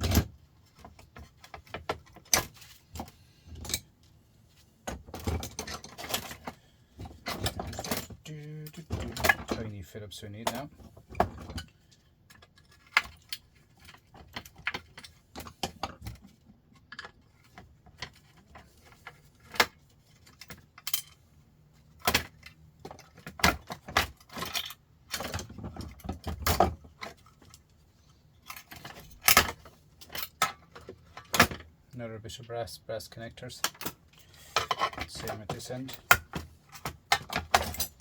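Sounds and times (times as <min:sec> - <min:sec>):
metal parts clattering: 0:05.0 - 0:09.7, 0:16.8 - 0:21.3, 0:21.9 - 0:27.6, 0:33.6 - 0:38.0.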